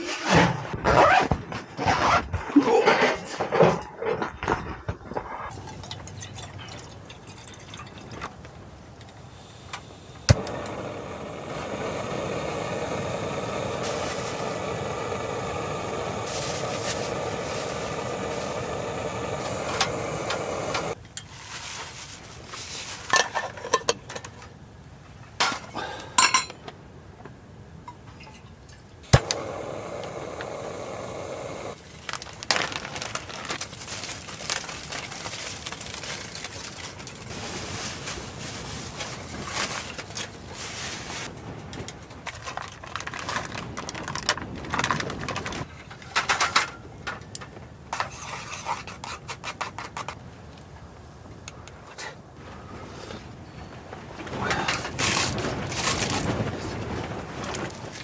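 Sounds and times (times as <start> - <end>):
tableware clinking: 26.2 - 26.6.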